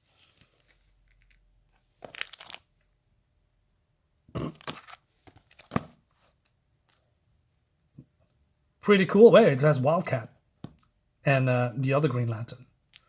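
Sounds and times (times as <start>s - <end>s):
plastic bags crinkling: 2.0s - 2.7s, 4.6s - 6.0s
sharp plastic crackle: 2.0s - 2.7s.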